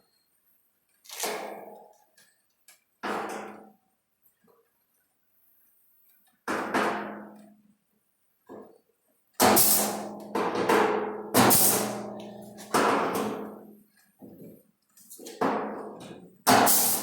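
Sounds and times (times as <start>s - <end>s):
hammer striking sheet metal: 9.4s - 13.5s, 16.5s - 17.0s.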